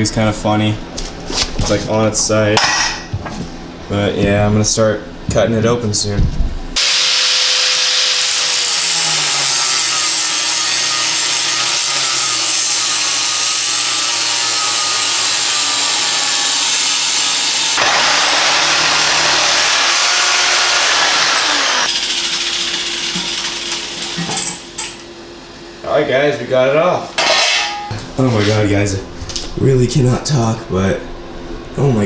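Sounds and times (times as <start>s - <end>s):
power tool grinding metal: 6.8s - 25.0s.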